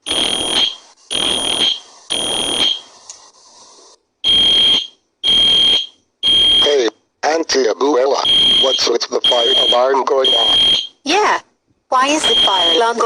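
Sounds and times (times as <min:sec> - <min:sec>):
fire alarm pulsing: 0:00.0 - 0:02.9, 0:04.2 - 0:06.8, 0:08.2 - 0:11.0, 0:12.2 - 0:13.0.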